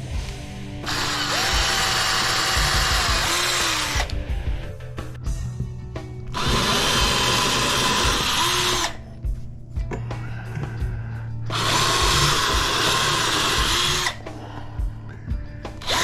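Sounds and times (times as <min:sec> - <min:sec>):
power drill whining: 0:00.8 - 0:04.6, 0:06.3 - 0:09.1, 0:11.5 - 0:14.3, 0:15.8 - 0:16.0.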